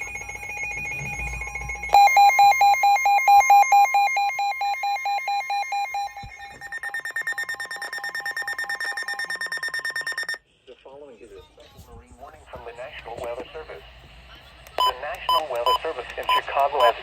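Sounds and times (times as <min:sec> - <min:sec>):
higher-pitched beeping alarm: 0:00.0 - 0:10.4
rapid electronic alarm beeping: 0:00.0 - 0:10.4, 0:14.8 - 0:17.0
steady warning tone: 0:00.0 - 0:10.4.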